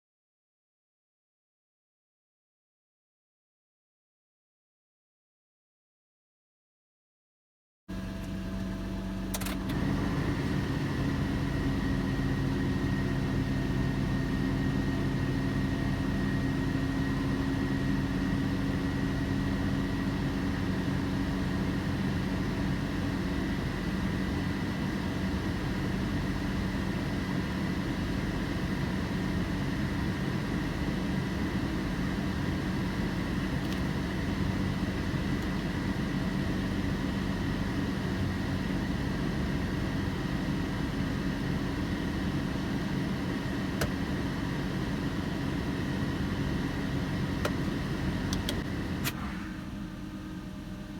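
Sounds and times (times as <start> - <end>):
engine humming: 7.9 - 41.4, 43.2 - 50.9
short click: 48.3 - 49.5
high-pitched whine: 48.7 - 50.9.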